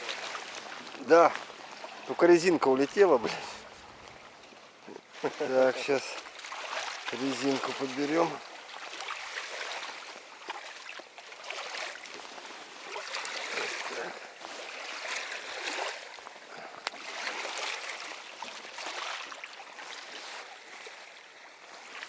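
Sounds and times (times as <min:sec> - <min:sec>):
water lapping against boat hull: 0:00.0 - 0:22.0.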